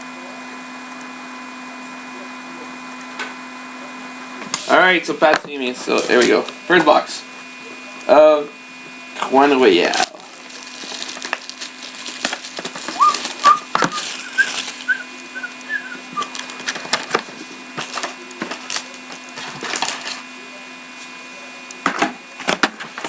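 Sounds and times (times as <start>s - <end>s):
steady low hum: 1.8s - 22.4s
cellophane and cardboard tearing: 5.9s - 6.5s, 9.5s - 20.2s.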